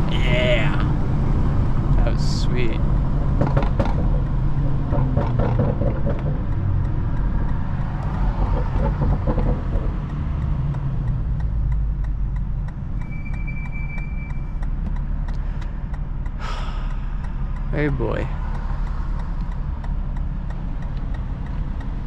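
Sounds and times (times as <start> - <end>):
car engine cruising: 0.0 - 22.0
tyre and road noise: 0.0 - 22.0.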